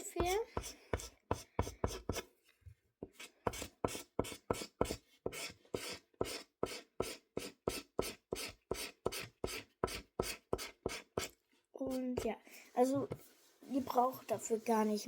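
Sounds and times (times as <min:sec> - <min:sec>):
felt-tip pen scribbling on paper: 0:03.1 - 0:11.4.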